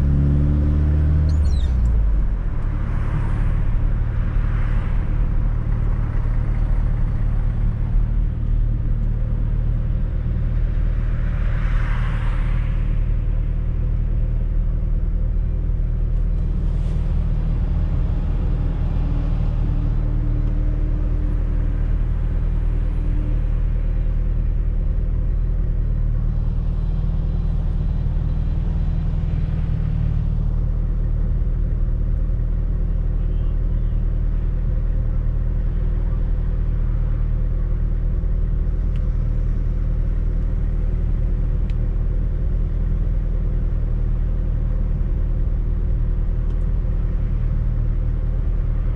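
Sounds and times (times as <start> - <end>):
car engine droning while driving: 0.0 - 48.9
road noise: 0.0 - 48.9.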